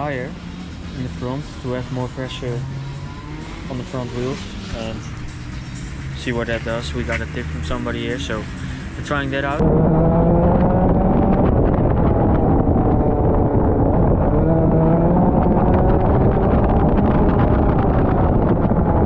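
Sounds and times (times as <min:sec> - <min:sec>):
kart engine revving: 0:09.4 - 0:19.0.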